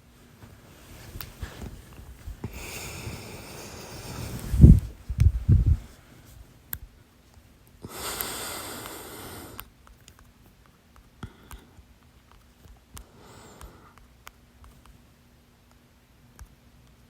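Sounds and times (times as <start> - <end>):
breathy hiss: 0.8 - 6.4, 7.8 - 9.7, 13.0 - 14.0.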